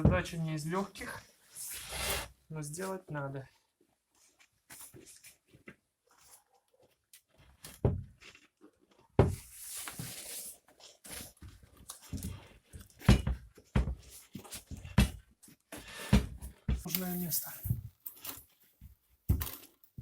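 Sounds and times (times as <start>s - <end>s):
knocks and thumps: 0.0s - 0.4s, 7.8s - 8.2s, 9.2s - 9.5s, 13.0s - 15.3s, 16.0s - 16.9s
scraping rub: 1.6s - 2.4s.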